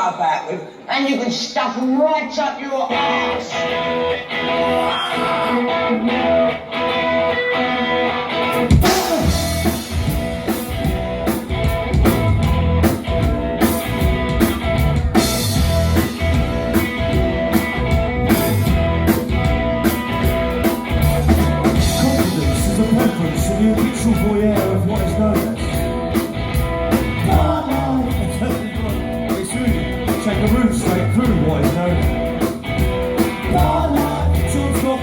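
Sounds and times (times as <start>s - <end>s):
rock guitar: 2.8s - 35.0s
drum kit and bass: 8.5s - 35.0s.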